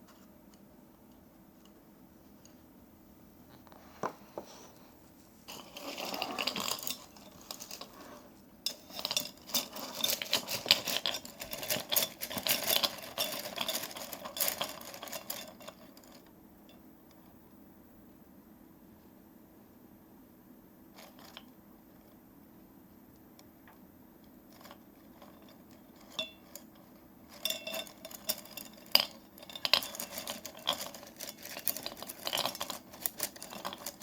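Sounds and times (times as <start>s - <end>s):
soft rustle: 3.4s - 16.1s
small hard objects rattling: 5.5s - 8.0s, 8.7s - 16.3s, 24.5s - 34.0s.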